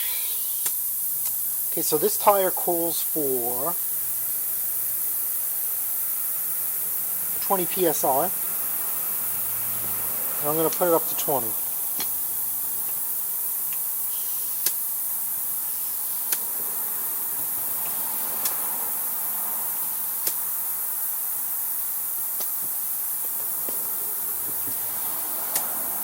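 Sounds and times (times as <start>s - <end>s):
compressed air hissing: 0.0s - 26.0s
sharp click: 25.5s - 25.7s.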